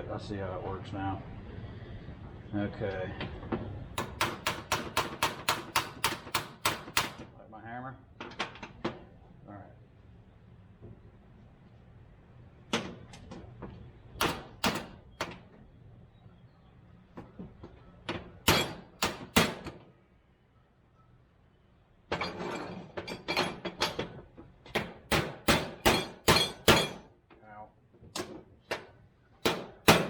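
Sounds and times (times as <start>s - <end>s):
hammer striking metal: 4.0s - 7.2s, 18.4s - 19.7s, 24.8s - 27.1s, 28.7s - 30.0s.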